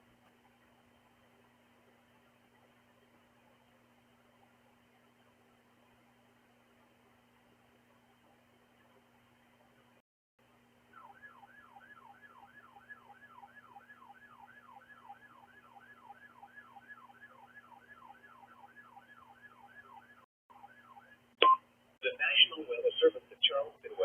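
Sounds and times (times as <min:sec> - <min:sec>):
steady low hum: 0:00.0 - 0:20.2
electronic siren yelping: 0:10.9 - 0:21.2.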